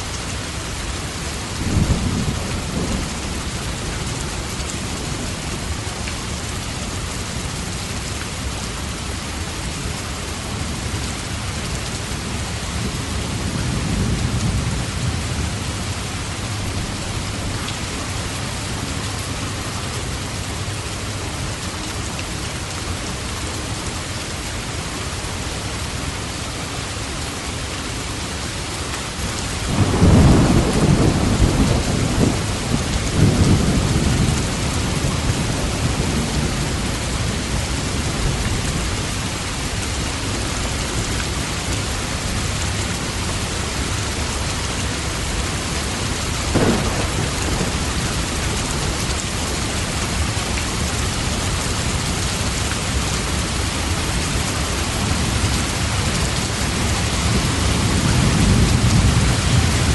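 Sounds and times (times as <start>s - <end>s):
heavy rain: 0.0s - 59.9s
thunder rumbling: 29.7s - 38.8s, 45.8s - 59.9s.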